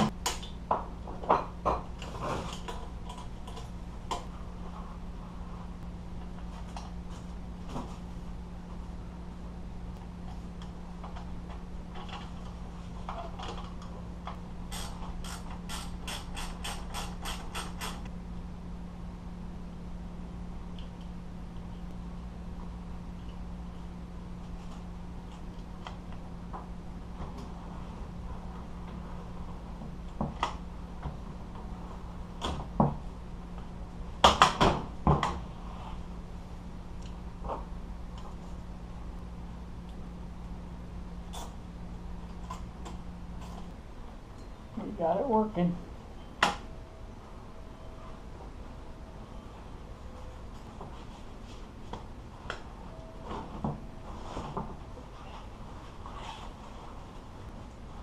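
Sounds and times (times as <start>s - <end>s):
steady low hum: 0.0s - 58.0s.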